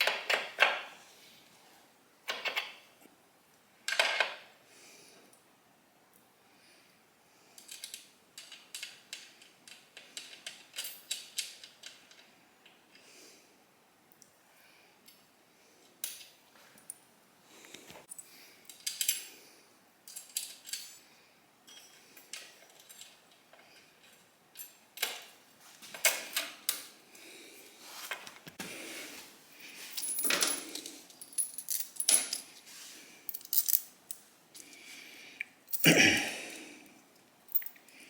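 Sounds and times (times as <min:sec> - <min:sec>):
metal tools clinking and scraping: 0:20.1 - 0:26.7, 0:29.6 - 0:32.7, 0:33.3 - 0:34.2, 0:37.5 - 0:38.0.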